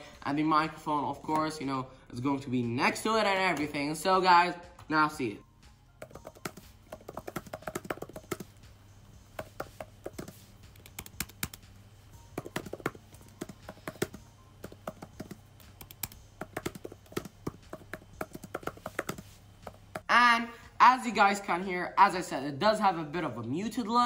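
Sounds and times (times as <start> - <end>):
soft keyboard typing: 6.0 - 8.6, 9.3 - 20.1.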